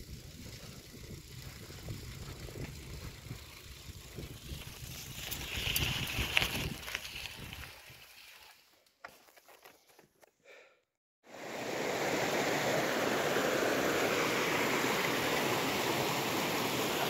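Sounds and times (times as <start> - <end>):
wind on microphone: 0.0 - 7.7
bike tyres rolling: 0.0 - 10.1.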